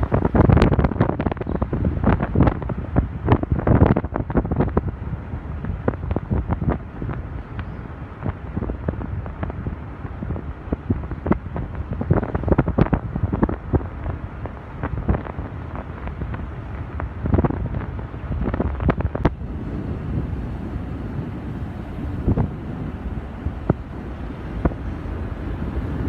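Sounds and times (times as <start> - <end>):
steady low rumble: 0.0 - 26.0
wind buffeting microphone: 0.0 - 26.0
knocks and crackles: 10.9 - 26.0.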